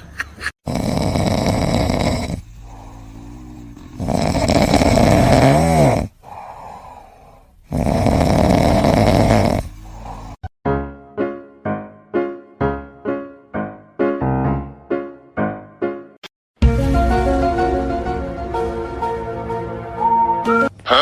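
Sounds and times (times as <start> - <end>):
pet snoring loudly: 0.6 - 10.5
quiet breaths: 2.0 - 4.4, 6.1 - 7.7, 8.8 - 10.5.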